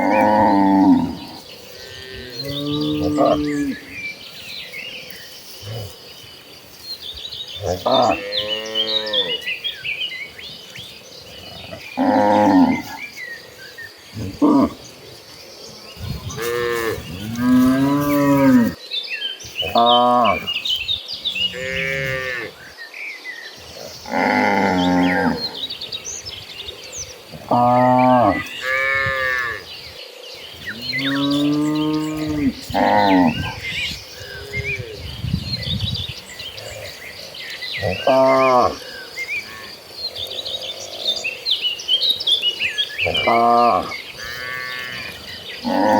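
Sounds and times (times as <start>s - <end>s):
cattle mooing: 0.0s - 3.9s, 7.6s - 9.5s, 16.2s - 18.8s, 24.0s - 25.5s, 30.8s - 33.6s, 43.0s - 45.9s
small birds chirping: 0.0s - 45.9s.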